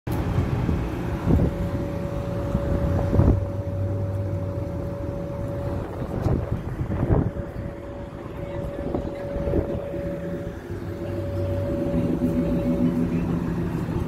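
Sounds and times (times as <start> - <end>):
bus engine idling hum: 0.1 - 14.0
high steady whine: 0.1 - 14.0.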